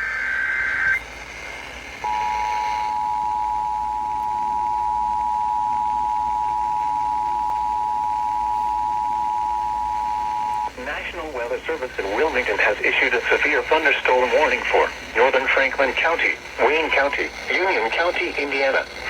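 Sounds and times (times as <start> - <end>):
digital data burst: 12.2 - 19.0.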